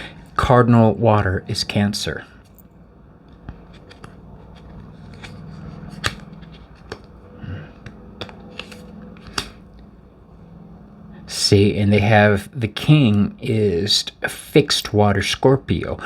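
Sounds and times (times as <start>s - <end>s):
faint steady hum: 0.0s - 16.0s
cards clicking on a table: 3.3s - 9.6s.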